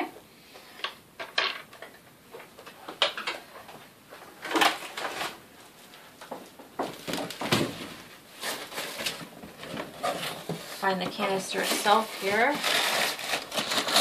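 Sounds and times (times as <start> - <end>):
plastic parts knocking and clattering: 0.8 - 5.4, 6.2 - 8.1.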